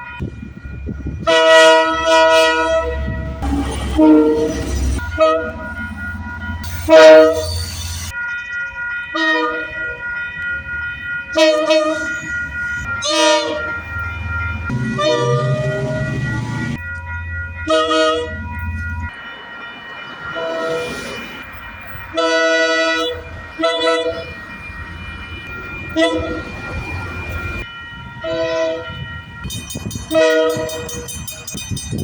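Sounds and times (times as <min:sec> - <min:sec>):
low rumble of trains: 0:00.0 - 0:32.0
train horn blasts: 0:01.2 - 0:05.7, 0:06.7 - 0:07.7, 0:11.4 - 0:12.0, 0:13.0 - 0:13.7, 0:14.7 - 0:16.8, 0:17.6 - 0:18.4, 0:22.1 - 0:24.3, 0:25.9 - 0:26.4, 0:28.2 - 0:28.9, 0:30.1 - 0:31.1.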